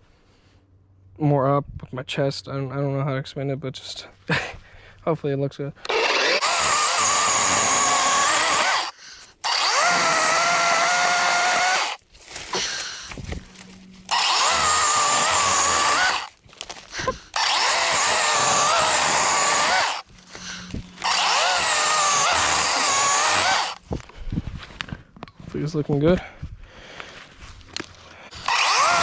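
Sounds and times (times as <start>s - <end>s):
cordless chainsaw cutting branches: 5.8s - 24.0s, 28.3s - 29.0s.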